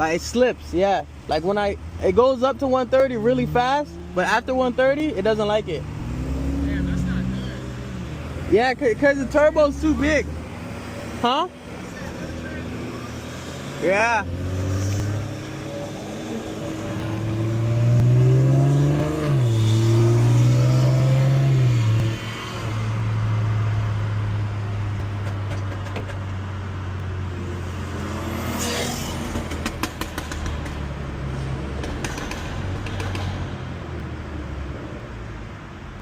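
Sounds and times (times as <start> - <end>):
car engine accelerating: 1.7 - 34.3.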